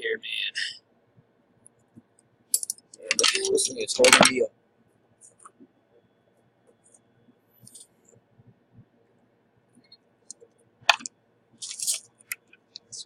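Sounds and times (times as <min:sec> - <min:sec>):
scratchy hiss: 0:02.5 - 0:04.5, 0:09.8 - 0:13.0.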